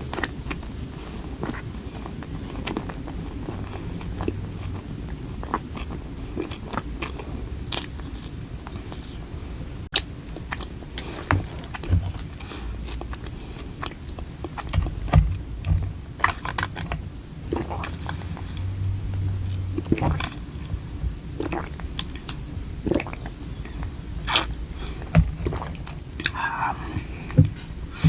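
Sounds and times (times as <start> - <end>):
mouth clicks and crunches: 0.0 - 28.0
person chewing food: 0.0 - 28.0.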